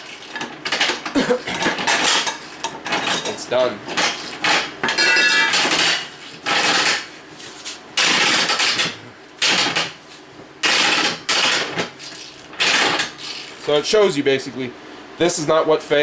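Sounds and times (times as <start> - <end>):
hand ratchet clicking: 8.0 - 10.0, 10.6 - 13.8.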